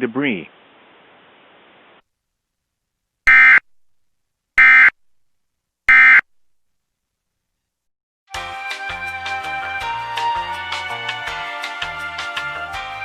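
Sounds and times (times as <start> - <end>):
digital data tone bursts: 3.3 - 3.7, 4.6 - 5.0, 5.9 - 6.3.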